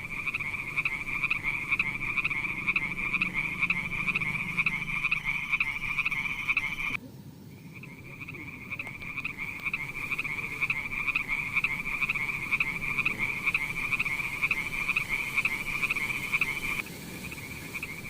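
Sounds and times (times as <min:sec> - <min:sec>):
frogs croaking in chorus: 0:00.0 - 0:18.0.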